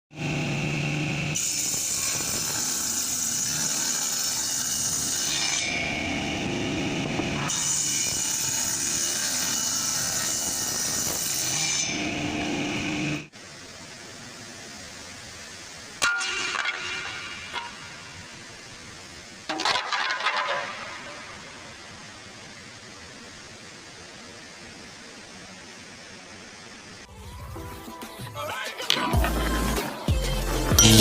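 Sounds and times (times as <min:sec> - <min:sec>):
power tools on wood: 0:00.4 - 0:13.3.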